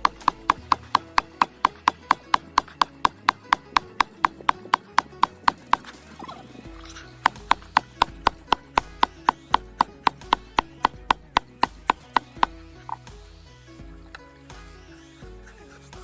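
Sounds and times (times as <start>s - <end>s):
quick percussive ticking: 0.0s - 6.0s, 7.2s - 13.0s.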